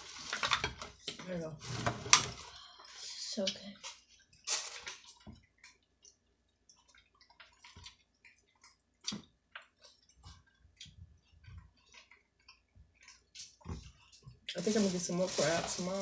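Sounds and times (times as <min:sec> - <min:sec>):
mouth chewing and smacking: 0:03.9 - 0:14.6.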